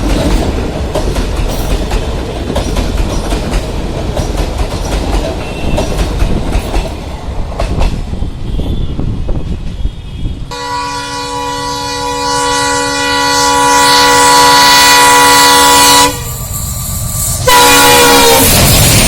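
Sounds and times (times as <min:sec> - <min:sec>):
train rumble: 0:00.0 - 0:19.0
locomotive horn blasts: 0:09.8 - 0:16.4, 0:17.4 - 0:18.6.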